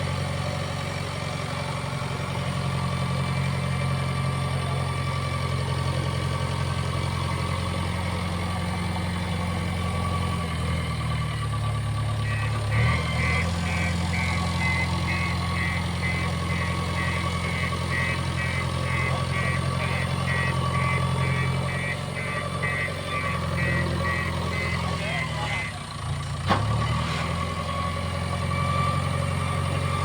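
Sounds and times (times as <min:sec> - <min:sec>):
diesel engine running: 0:00.0 - 0:30.0
rapid high beeping: 0:12.2 - 0:25.8.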